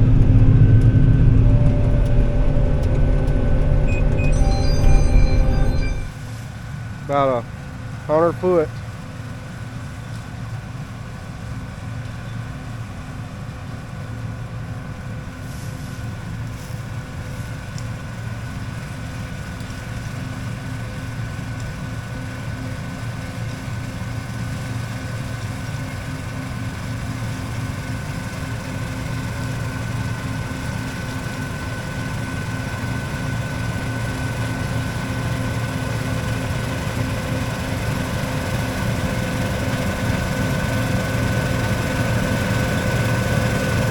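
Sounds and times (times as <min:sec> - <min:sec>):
farm vehicle engine humming: 0:00.0 - 0:06.2, 0:17.1 - 0:43.9
thin steady whine: 0:00.0 - 0:06.4.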